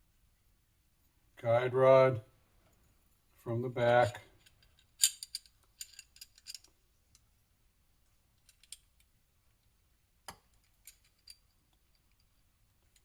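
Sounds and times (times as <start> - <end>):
metal clicks and taps of gun parts: 4.4 - 7.2.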